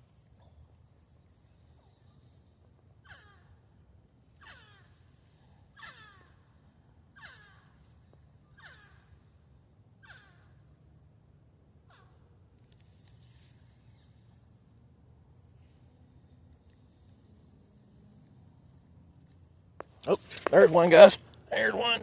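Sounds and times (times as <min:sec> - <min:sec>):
bird calling: 0:03.0 - 0:09.4, 0:10.0 - 0:10.8.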